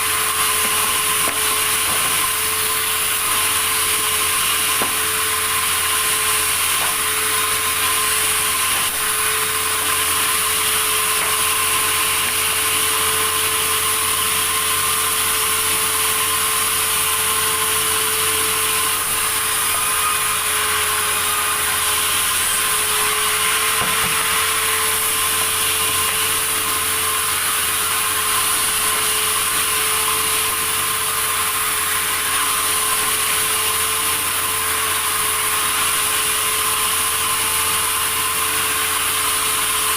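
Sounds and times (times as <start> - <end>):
saw cutting through wood: 0.0 - 39.9.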